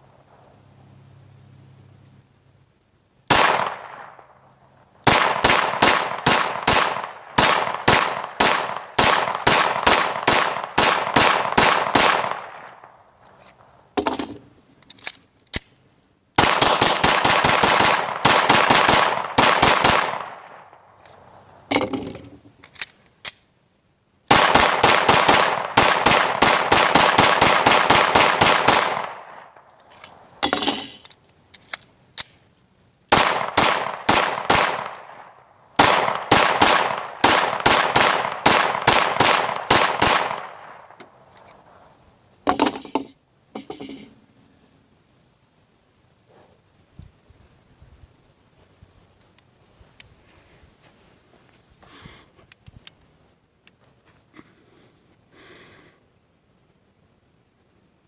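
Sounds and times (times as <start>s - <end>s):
pistol shots: 3.3s - 4.2s, 5.0s - 12.9s, 16.4s - 20.8s, 24.3s - 29.7s, 33.1s - 41.0s.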